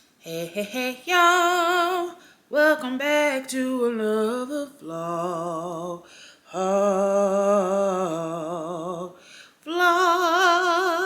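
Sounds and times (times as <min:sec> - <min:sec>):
woman singing with vibrato: 0:00.2 - 0:11.0.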